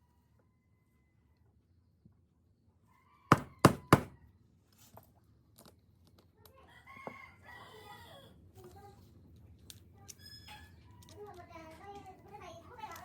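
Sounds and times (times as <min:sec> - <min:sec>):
rooster crowing: 0:02.9 - 0:04.2, 0:06.8 - 0:08.2
sharp knocks: 0:03.3 - 0:04.2.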